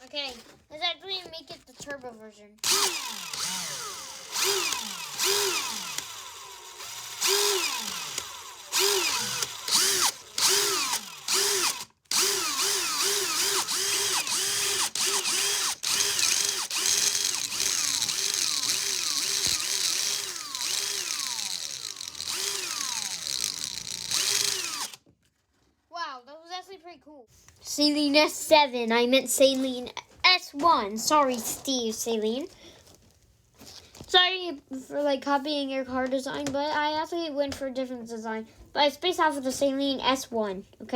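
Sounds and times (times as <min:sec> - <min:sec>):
cordless screwdriver motor whining: 0:02.6 - 0:25.0.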